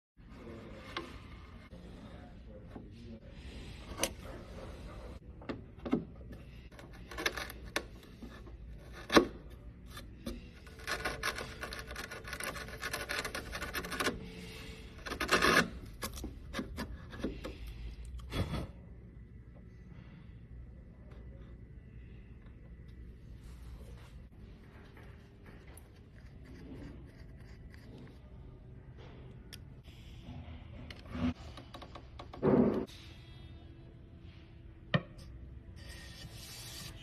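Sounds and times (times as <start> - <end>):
scraping and rasping wood: 6.7 - 17.6.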